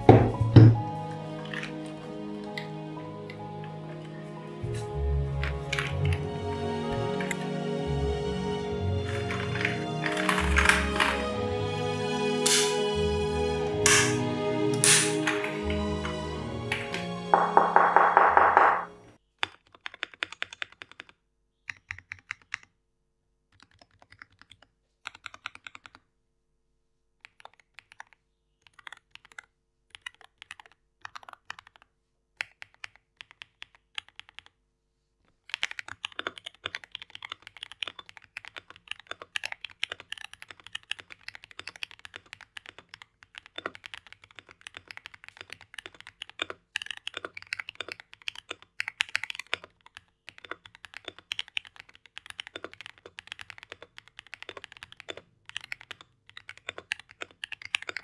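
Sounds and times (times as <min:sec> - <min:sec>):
mechanical keyboard typing: 0:09.1 - 0:11.2, 0:19.4 - 0:22.7, 0:23.5 - 0:26.0, 0:27.2 - 0:34.6, 0:35.4 - 0:58.0.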